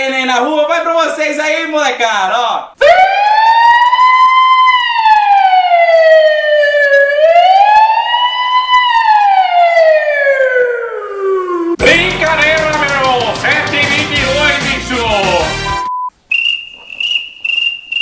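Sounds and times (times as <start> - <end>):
man imitating a siren: 2.8 - 11.8.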